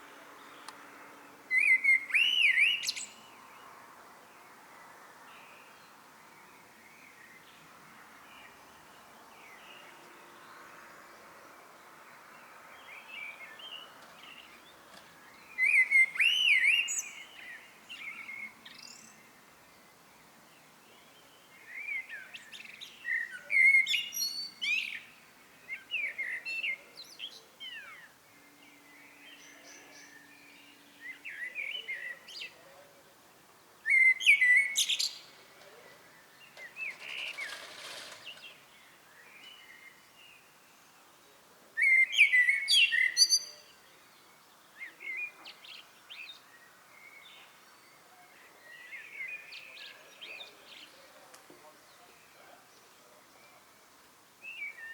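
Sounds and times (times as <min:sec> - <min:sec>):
blackbird singing: 0:01.5 - 0:03.6, 0:12.8 - 0:32.9, 0:33.8 - 0:53.8, 0:54.4 - 0:54.9.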